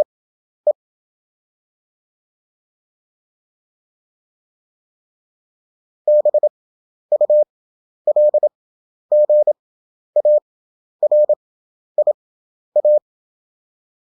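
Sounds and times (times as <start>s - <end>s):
morse code tone: 6.1s - 6.4s, 9.2s - 9.5s, 10.2s - 10.4s.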